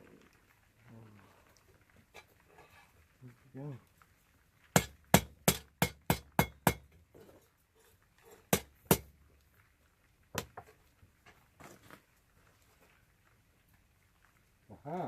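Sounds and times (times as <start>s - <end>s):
hammer striking metal: 4.8s - 6.8s.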